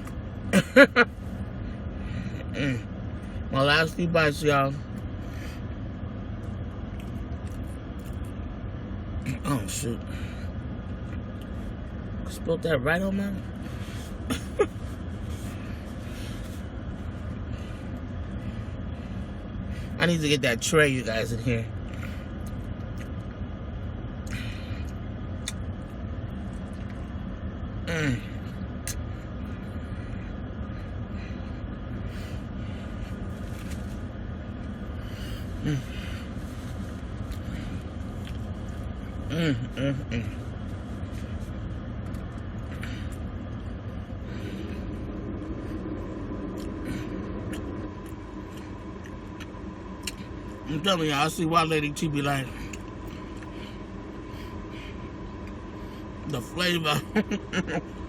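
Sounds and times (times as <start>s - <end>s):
car idling: 0.0s - 58.0s
low rumble: 21.6s - 58.0s.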